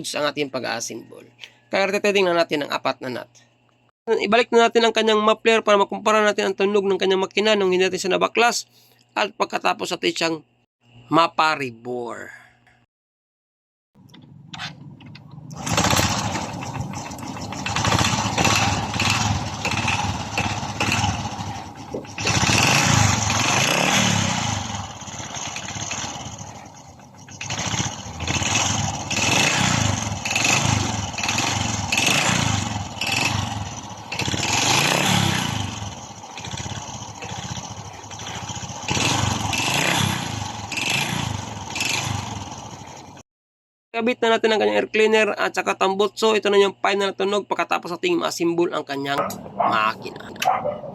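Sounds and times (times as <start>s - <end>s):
motorcycle engine revving: 14.2s - 43.2s.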